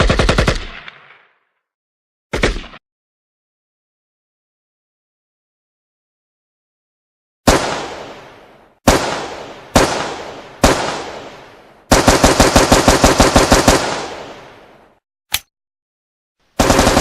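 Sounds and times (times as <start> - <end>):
rifle single shots echoing: 8.9 - 12.0
automatic gunfire burst: 11.9 - 14.2, 16.6 - 17.0.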